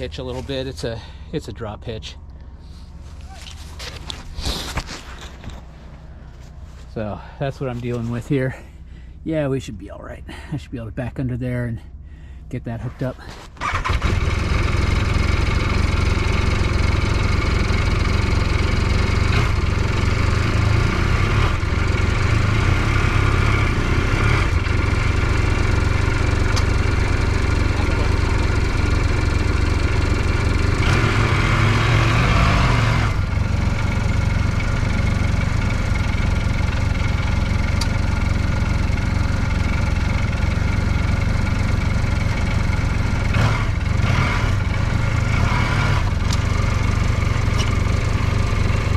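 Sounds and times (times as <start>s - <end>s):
utility vehicle engine idling: 0.0s - 32.1s, 32.7s - 48.9s
engine revving: 13.6s - 48.9s.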